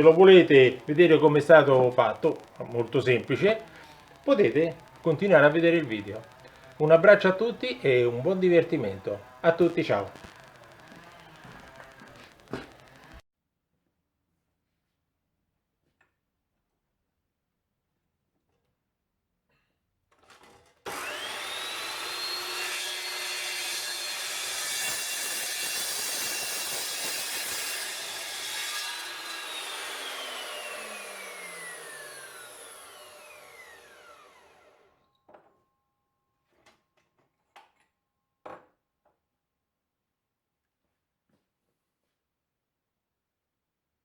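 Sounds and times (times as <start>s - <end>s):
harsh cutting hiss: 0.0s - 13.2s, 20.9s - 34.3s
power tool motor whining: 0.0s - 13.2s, 20.9s - 34.9s.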